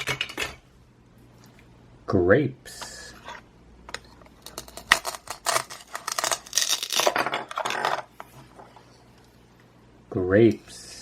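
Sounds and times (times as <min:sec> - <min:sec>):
velcro ripping: 0:05.0 - 0:07.2.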